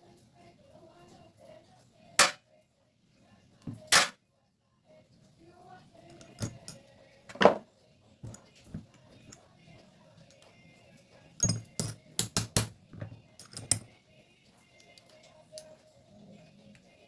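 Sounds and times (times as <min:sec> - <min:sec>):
tools knocking and clicking: 0:03.7 - 0:04.2, 0:06.1 - 0:07.6, 0:08.2 - 0:09.4, 0:11.4 - 0:13.9.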